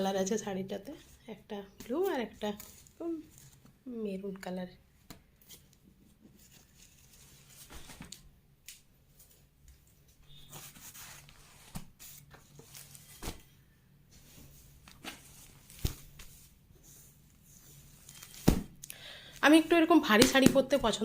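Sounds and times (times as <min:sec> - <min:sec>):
cloth rustling: 0:05.6 - 0:08.3.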